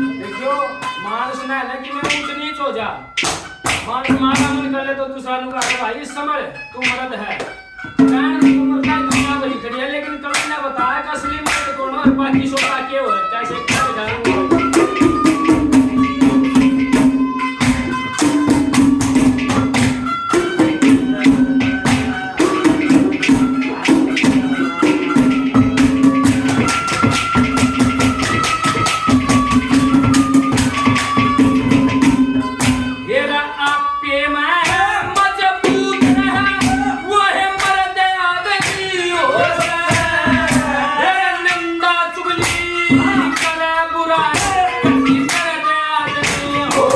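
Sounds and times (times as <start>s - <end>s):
held melodic line: 0.0s - 38.1s
instrumental accompaniment: 0.0s - 46.9s
jingling percussion: 0.0s - 46.9s
person singing folk song: 3.8s - 16.5s, 33.0s - 46.9s.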